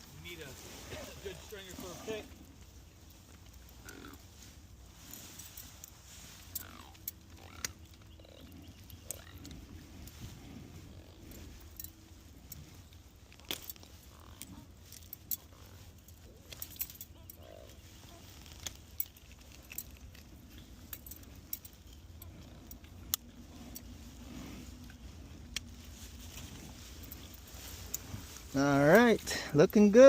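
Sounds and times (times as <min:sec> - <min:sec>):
low background rumble: 0:00.0 - 0:30.0
metal clips clinking: 0:11.4 - 0:24.0.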